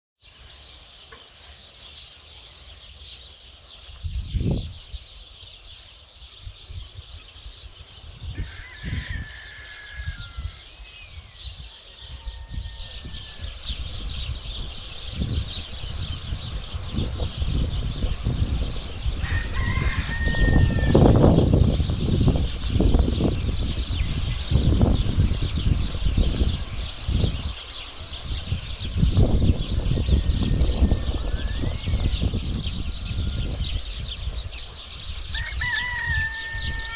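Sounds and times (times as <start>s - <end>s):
small birds chirping: 0.2s - 36.9s
rooster crowing: 8.3s - 13.7s, 19.1s - 21.5s, 29.9s - 32.2s, 32.8s - 33.8s, 35.3s - 36.9s.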